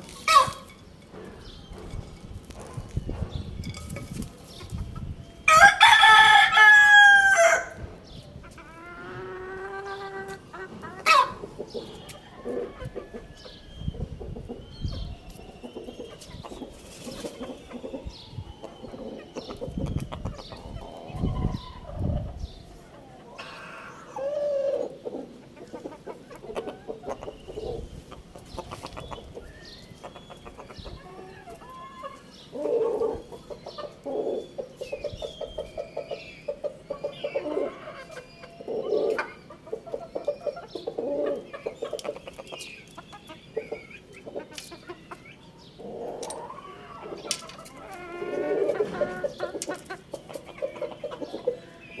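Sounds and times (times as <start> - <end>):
chickens clucking: 0.0 - 52.0
rooster crowing: 5.5 - 7.8.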